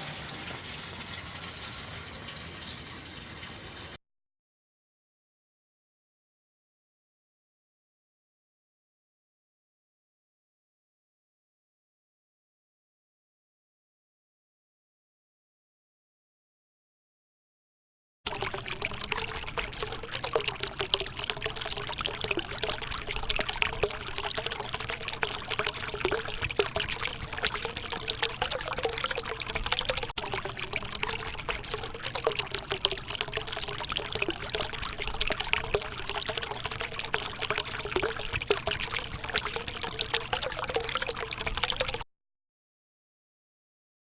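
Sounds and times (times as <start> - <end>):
river water lapping at bank: 18.3 - 42.0.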